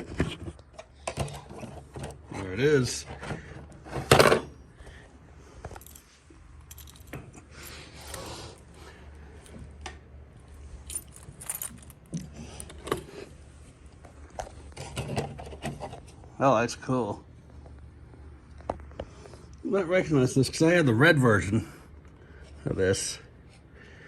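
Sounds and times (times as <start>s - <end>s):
light clicks and clinks: 10.8s - 13.0s.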